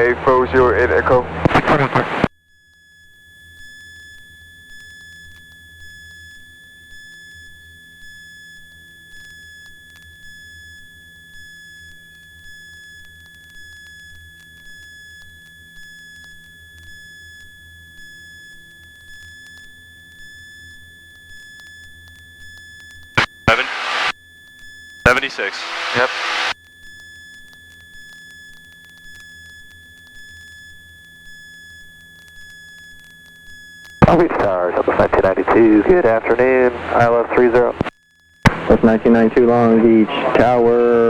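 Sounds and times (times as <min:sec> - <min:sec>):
high electronic whine: 0:23.2 - 0:24.1, 0:25.1 - 0:26.6
aircraft engine hum: 0:25.1 - 0:26.5
pulsing tone: 0:25.2 - 0:26.5.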